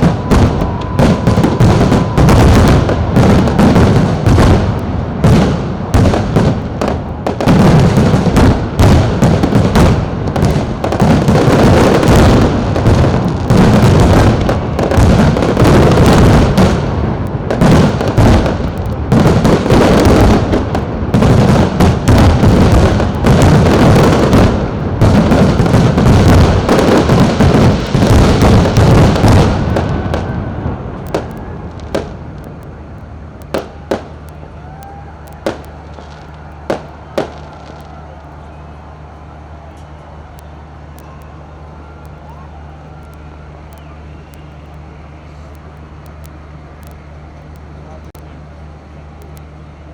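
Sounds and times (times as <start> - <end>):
fireworks bangs: 0.0 - 47.5.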